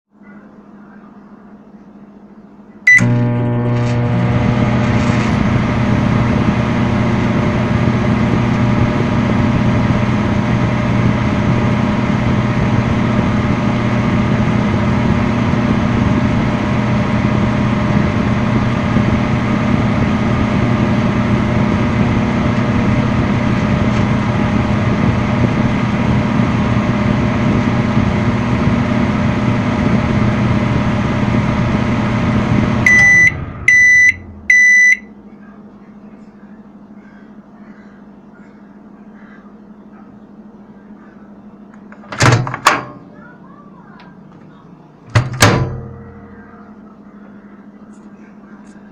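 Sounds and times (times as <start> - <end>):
microwave humming and whirring: 0.2 - 48.9
microwave switch click: 41.7 - 42.9, 45.1 - 46.2.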